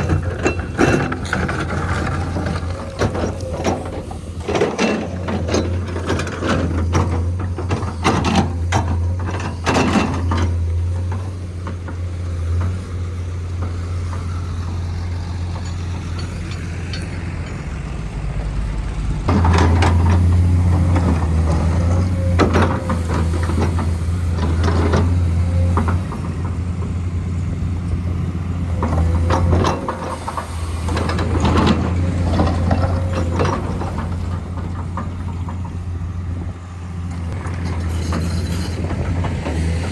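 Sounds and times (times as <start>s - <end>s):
metallic clanks and knocks: 0.0s - 12.8s, 13.5s - 18.2s
diesel machinery deep hum: 0.0s - 39.9s.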